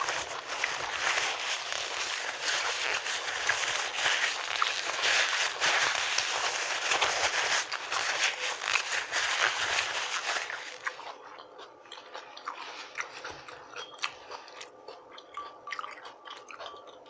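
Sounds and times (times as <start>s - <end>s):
chewing with wet clicks: 10.5s - 17.0s.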